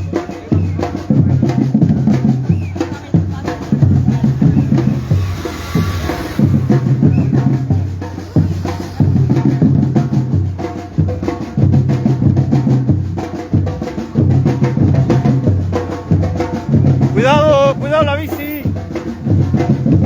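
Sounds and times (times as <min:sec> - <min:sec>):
deep bass drums: 0:00.0 - 0:13.2.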